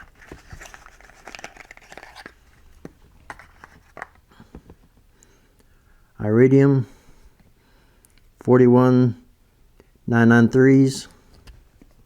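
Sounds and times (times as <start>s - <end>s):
packaging crinkling: 0.0s - 4.2s.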